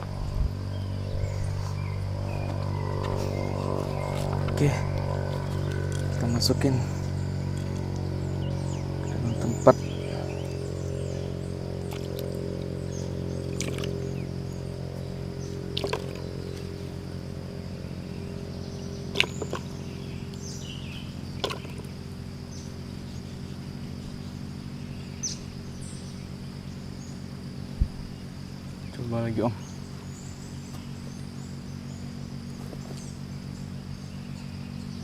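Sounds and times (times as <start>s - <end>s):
faint high insect chirring: 0.0s - 35.0s
steady low hum: 0.0s - 35.0s.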